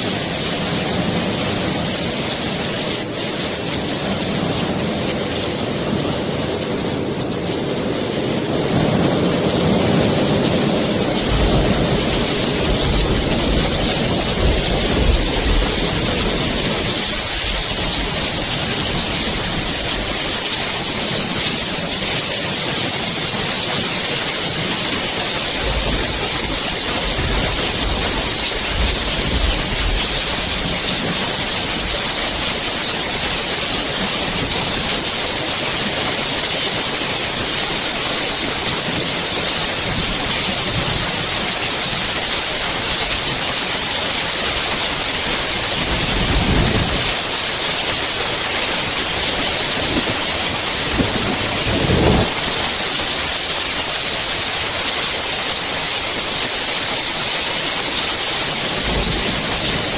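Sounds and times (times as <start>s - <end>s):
heavy rain: 0.0s - 59.9s
low rumbling: 9.6s - 20.2s.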